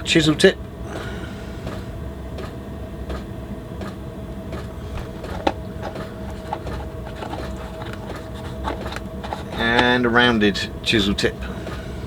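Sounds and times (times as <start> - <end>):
low background hum: 0.0 - 12.0
small parts clicking and knocking: 5.0 - 10.0.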